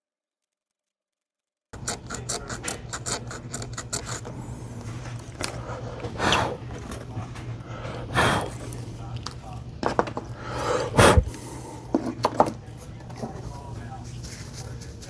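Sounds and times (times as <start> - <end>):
sandpaper rubbing circuit board: 1.8 - 4.3
steady low hum: 1.8 - 15.0.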